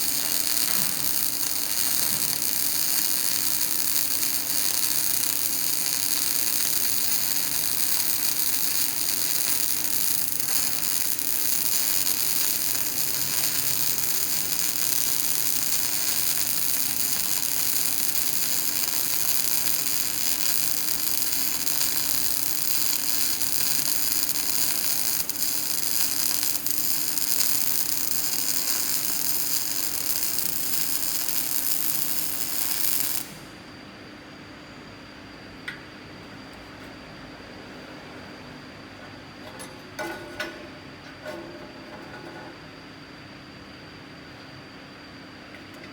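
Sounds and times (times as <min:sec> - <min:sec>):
welding arc hissing: 0:00.0 - 0:33.6.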